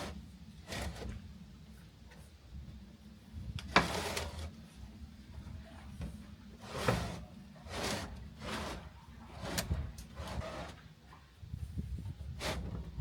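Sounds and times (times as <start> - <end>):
scraping sliding sounds: 3.7 - 4.5, 6.6 - 10.8, 12.4 - 12.8.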